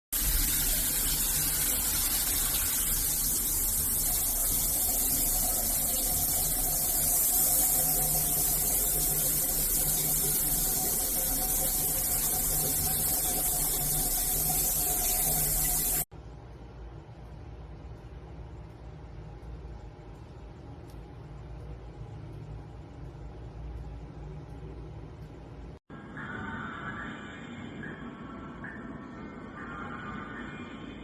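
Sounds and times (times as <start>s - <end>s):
shower spraying water: 0.1s - 16.1s.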